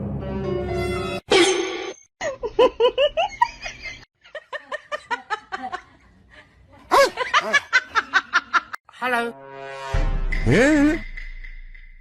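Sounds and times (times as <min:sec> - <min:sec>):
people laughing hard: 0:02.2 - 0:08.8.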